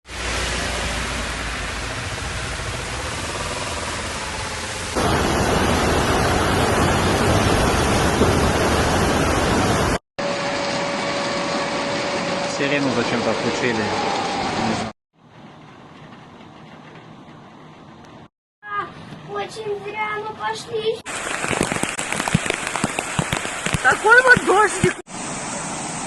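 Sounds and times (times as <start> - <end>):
heavy rain pouring: 0.1 - 14.9, 21.1 - 26.0.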